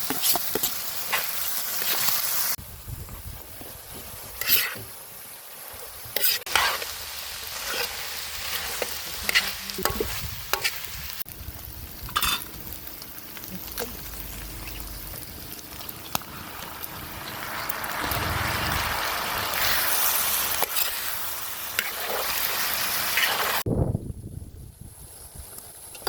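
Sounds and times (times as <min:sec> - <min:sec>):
meat sizzling in a pan: 0:00.0 - 0:23.7
utensil scraping metal pan: 0:04.4 - 0:04.9, 0:06.2 - 0:06.9, 0:12.1 - 0:12.5.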